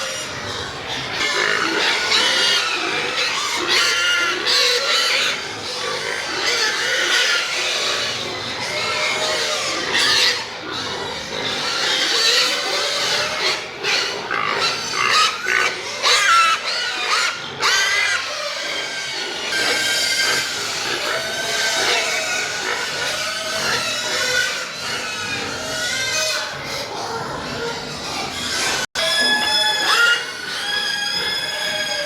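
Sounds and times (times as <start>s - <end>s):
pigs squealing and grunting: 0.0s - 32.0s.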